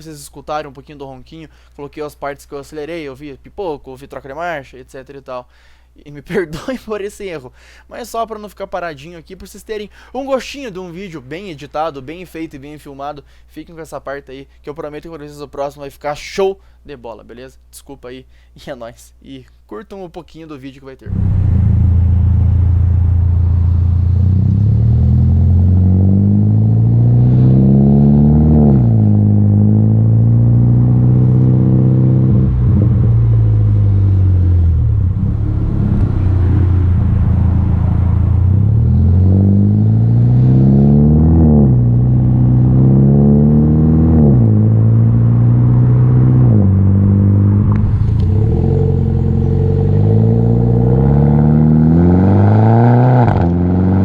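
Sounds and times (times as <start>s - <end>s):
exhaust pops and crackles: 21.1s - 25.0s, 44.0s - 49.4s
car engine revving: 21.1s - 54.0s.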